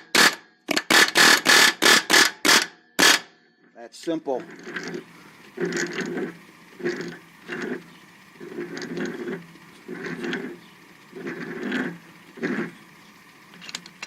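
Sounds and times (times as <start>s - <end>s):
air hammer bursts: 0.0s - 3.3s.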